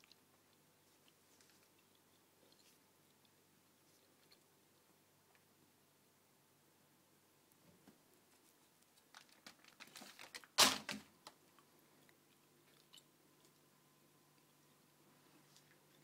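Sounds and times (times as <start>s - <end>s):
cat crunching food: 0.0s - 4.9s, 11.3s - 13.7s.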